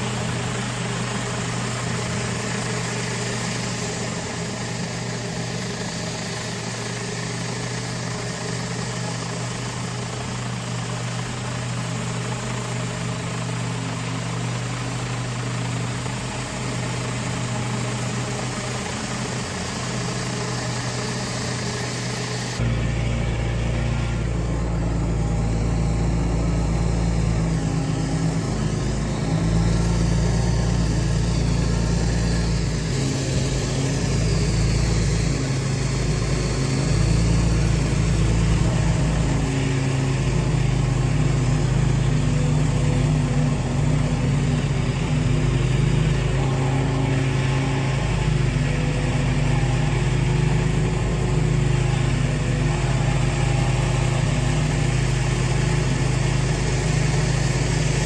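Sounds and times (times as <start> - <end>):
constant spray hiss: 0.0 - 58.0
pressure washer engine: 0.0 - 58.0.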